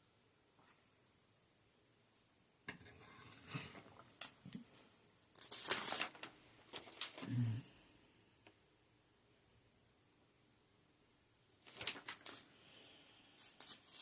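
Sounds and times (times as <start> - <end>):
rustling: 3.2 - 7.4, 11.6 - 12.6, 13.4 - 14.0.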